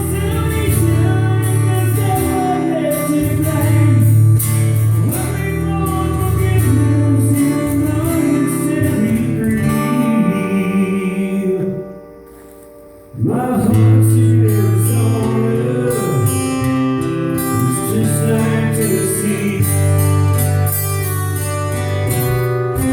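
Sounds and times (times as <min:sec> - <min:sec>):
person singing: 0:00.0 - 0:04.3, 0:05.0 - 0:12.0, 0:13.2 - 0:20.2
guitar: 0:00.0 - 0:22.9.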